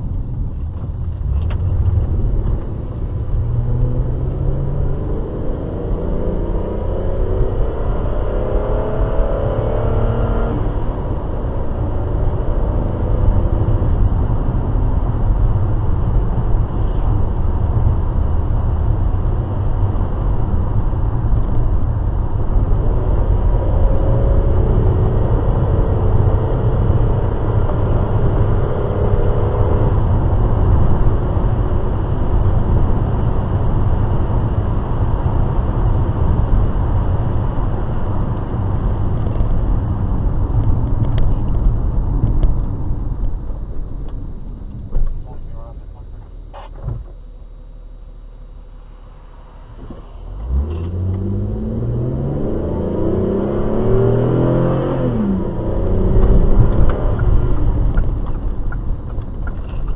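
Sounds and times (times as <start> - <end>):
vehicle engine and road noise: 0.0 - 59.9.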